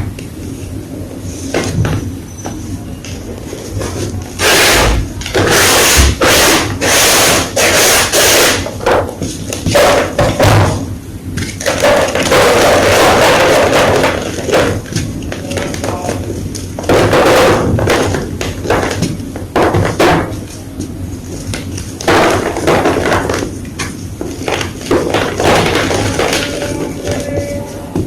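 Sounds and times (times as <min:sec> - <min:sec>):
chalk blocks crunching: 0:03.6 - 0:08.8.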